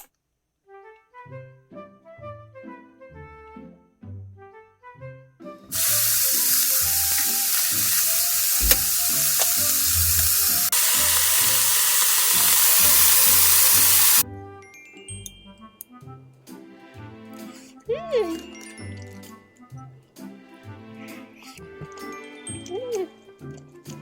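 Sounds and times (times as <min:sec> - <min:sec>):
light background music: 0:00.7 - 0:24.0
food sizzling in a frying pan: 0:05.7 - 0:14.2.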